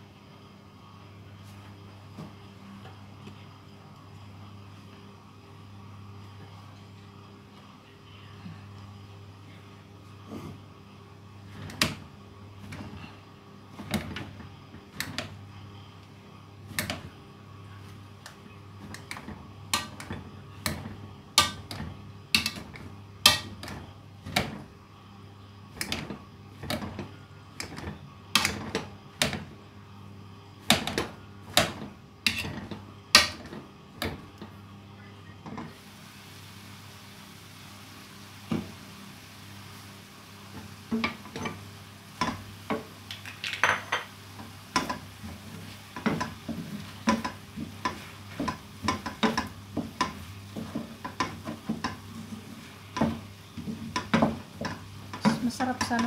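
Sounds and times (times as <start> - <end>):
faint hum: 0.0 - 56.0
utensil knocking on cookware: 53.9 - 56.0.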